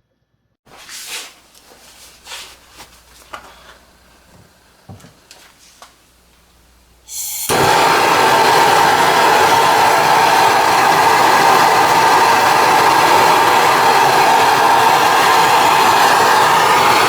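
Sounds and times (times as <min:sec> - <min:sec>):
loud steady rushing noise: 0:07.5 - 0:17.0.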